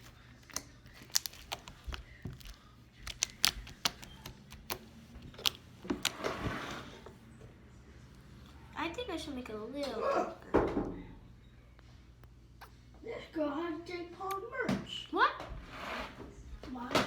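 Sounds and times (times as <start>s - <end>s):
sticky slime clicks and pops: 0.5s - 4.8s.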